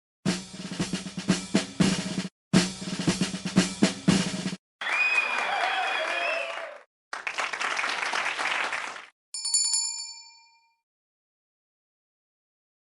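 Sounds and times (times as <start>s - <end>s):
crowd applause: 4.8s - 9.1s
bell ding: 9.4s - 10.8s.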